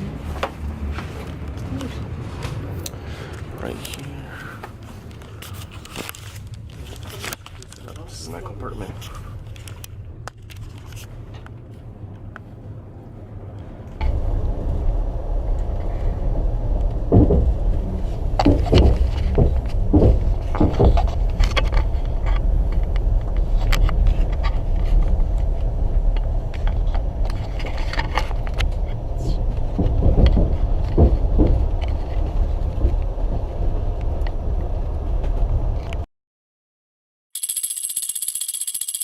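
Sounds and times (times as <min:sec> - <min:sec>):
train rumbling: 0:00.0 - 0:36.1
train clicks and rattles: 0:13.5 - 0:36.0.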